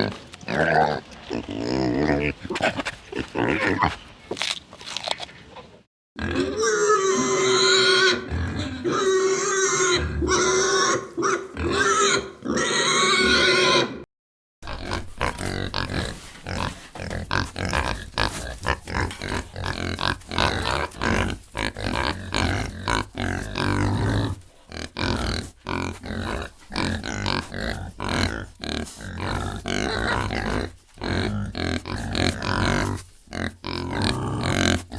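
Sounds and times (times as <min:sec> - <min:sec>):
pigs squealing: 0:00.0 - 0:04.0, 0:06.2 - 0:14.0, 0:14.6 - 0:34.9
pigs grunting: 0:00.0 - 0:04.4, 0:06.2 - 0:14.0, 0:14.6 - 0:34.9.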